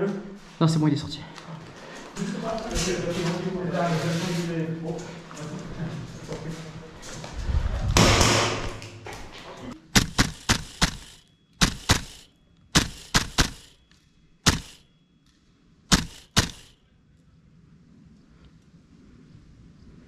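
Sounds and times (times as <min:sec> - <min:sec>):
airsoft rifle shots: 0:08.0 - 0:08.8, 0:09.9 - 0:13.8, 0:14.4 - 0:14.9, 0:15.9 - 0:16.8.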